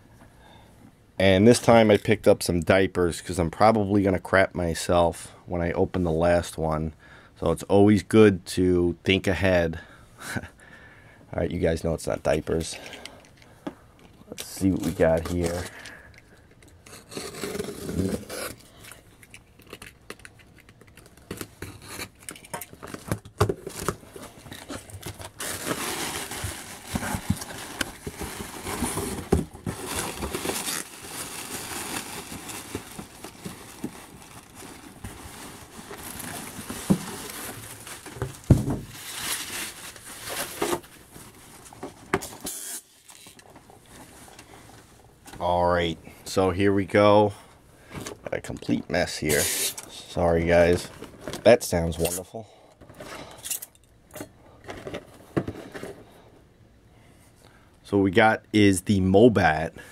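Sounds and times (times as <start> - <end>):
cardboard box being torn and rummaged: 17.0 - 18.6, 22.9 - 40.8.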